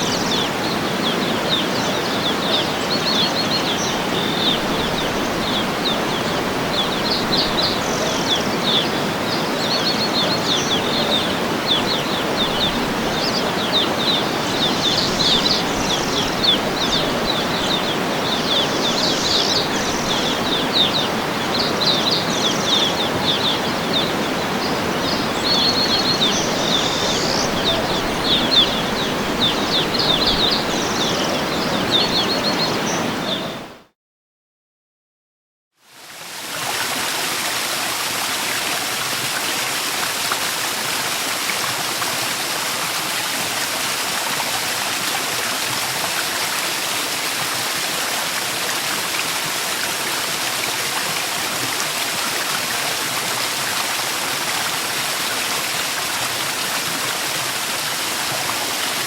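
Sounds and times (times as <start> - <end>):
small birds chirping: 0.0 - 33.7
waterfall rushing: 0.0 - 33.8, 36.3 - 59.0.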